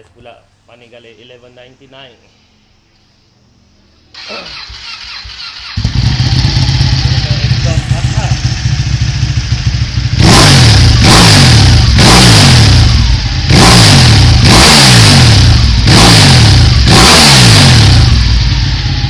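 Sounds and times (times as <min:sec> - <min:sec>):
motorcycle engine revving: 0:04.2 - 0:19.0.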